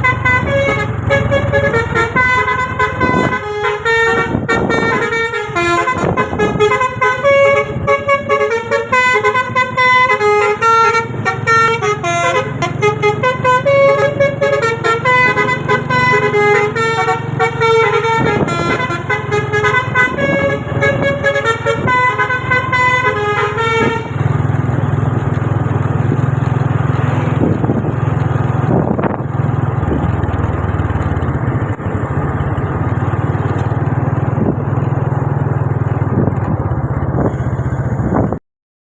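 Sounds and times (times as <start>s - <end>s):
bus horn playing a melody: 0.0s - 25.2s
bus engine droning: 0.0s - 38.4s.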